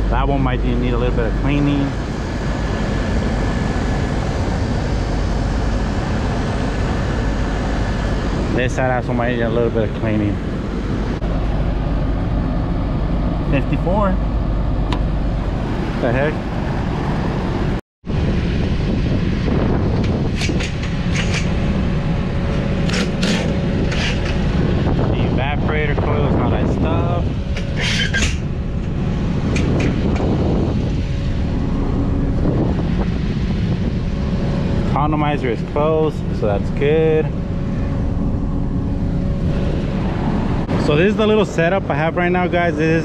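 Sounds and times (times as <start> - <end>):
air conditioning unit drone: 0.0 - 43.0.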